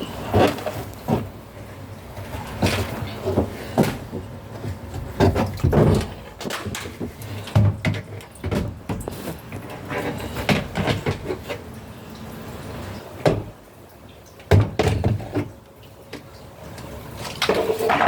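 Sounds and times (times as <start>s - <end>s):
hard objects clunking: 0.0s - 11.7s, 17.2s - 18.0s.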